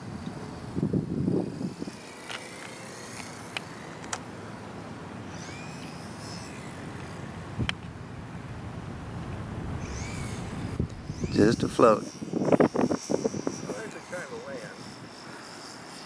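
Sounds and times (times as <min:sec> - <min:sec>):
wind noise on microphone: 0:00.0 - 0:02.1, 0:07.4 - 0:14.2
low rumble: 0:08.2 - 0:11.8.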